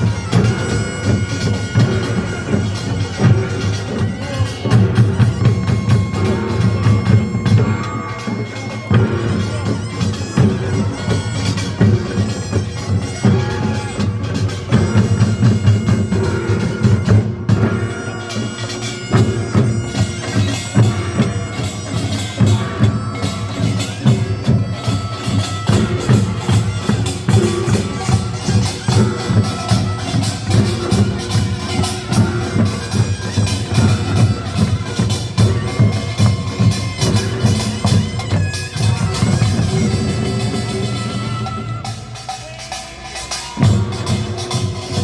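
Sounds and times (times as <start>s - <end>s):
loud reedy shawm melody: 0.0s - 45.0s.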